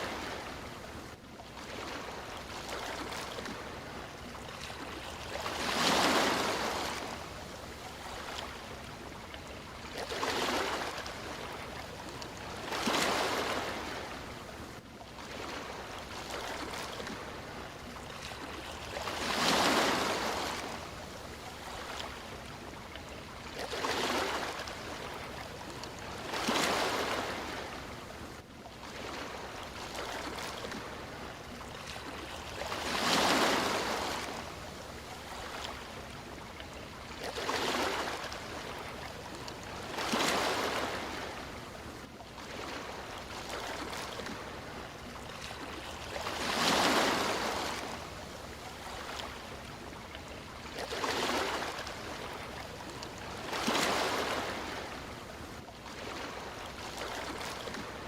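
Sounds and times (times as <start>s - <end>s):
sea waves breaking: 0.0s - 58.0s.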